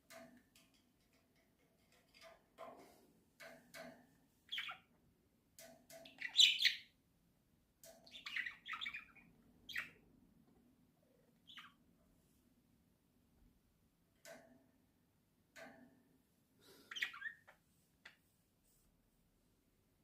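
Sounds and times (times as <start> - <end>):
budgerigars chirping: 4.5 - 4.9, 6.1 - 6.9, 8.1 - 10.0, 16.9 - 17.5.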